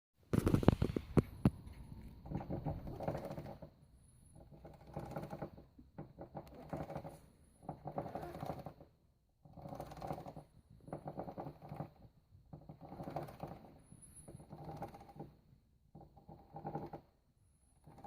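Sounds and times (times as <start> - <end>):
motorcycle chain rattling grind: 1.8 - 8.8, 9.5 - 15.4, 16.0 - 17.1, 17.8 - 18.0.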